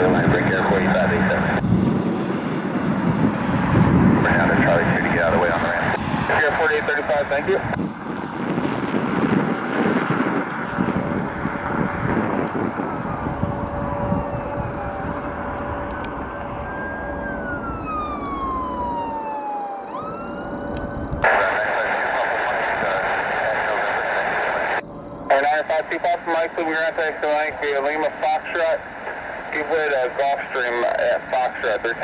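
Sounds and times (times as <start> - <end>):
steady rumble: 0.0 - 21.7
jet engine whine: 0.0 - 32.0.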